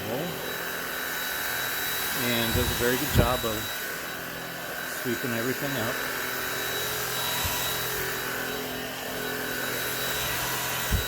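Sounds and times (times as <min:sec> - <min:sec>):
stick vacuum running: 0:00.0 - 0:11.0.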